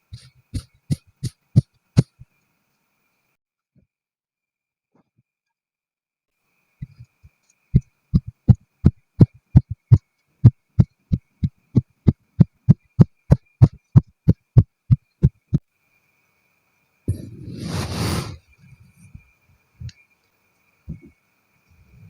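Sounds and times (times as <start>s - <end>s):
knife cutting through sand: 17.1s - 18.4s.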